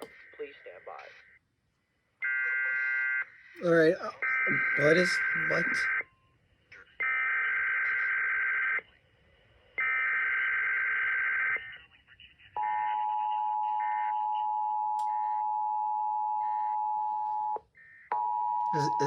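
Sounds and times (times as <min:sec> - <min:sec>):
two-tone alert signal: 0:18.2 - 0:19.0.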